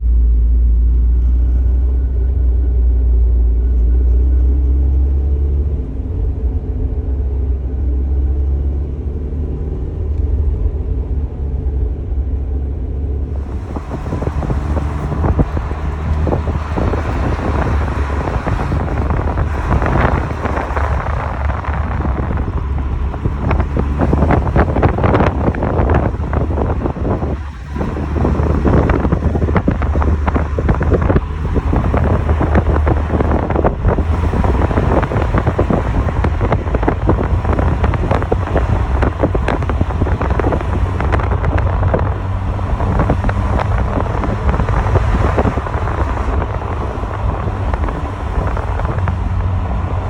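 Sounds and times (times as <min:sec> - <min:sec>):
car engine idling: 0:00.0 - 0:50.0
electrical crackling and clicking: 0:13.3 - 0:50.0.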